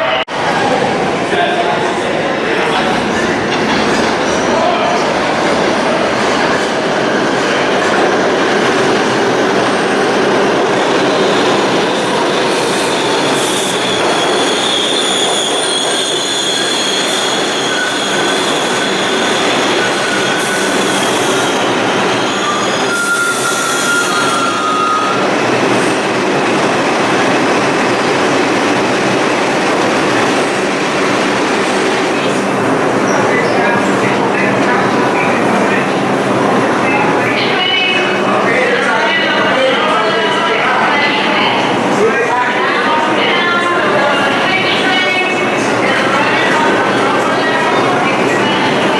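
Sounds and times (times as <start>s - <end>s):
subway train rumbling: 0.0s - 48.9s
high thin wheel squeals: 12.8s - 25.2s.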